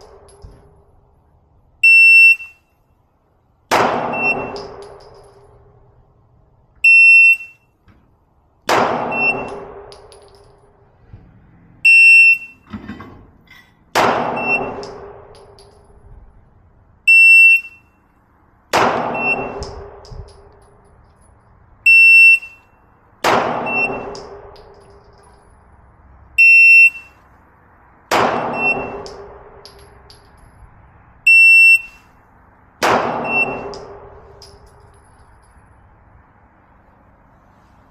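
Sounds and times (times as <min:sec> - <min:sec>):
pistol shot: 0:03.7 - 0:05.1, 0:08.7 - 0:10.1, 0:14.0 - 0:15.6, 0:18.7 - 0:20.1, 0:23.2 - 0:24.7, 0:28.1 - 0:29.6, 0:32.8 - 0:34.3
shot timer beep: 0:19.2 - 0:19.6, 0:33.2 - 0:33.6.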